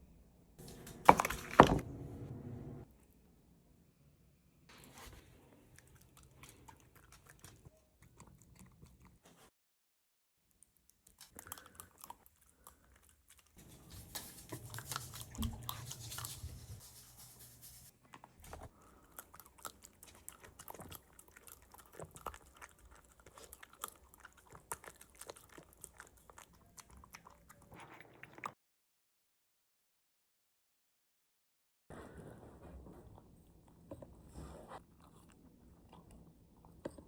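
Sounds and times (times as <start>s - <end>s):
puppy chewing food: 5.6s - 9.5s, 10.7s - 17.0s, 17.9s - 27.8s.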